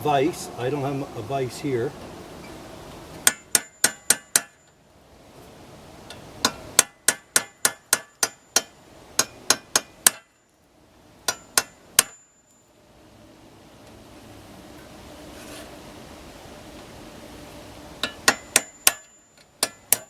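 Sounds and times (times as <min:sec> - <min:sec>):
hammer striking steel punch: 0:03.2 - 0:04.6, 0:06.4 - 0:10.3, 0:11.3 - 0:12.3, 0:18.0 - 0:20.0.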